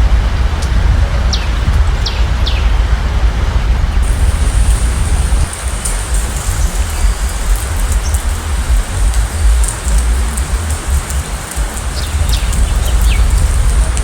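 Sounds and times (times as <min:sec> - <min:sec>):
high hiss: 0:04.0 - 0:14.0
steady rain falling: 0:04.0 - 0:14.0
drop ticks: 0:04.1 - 0:14.0.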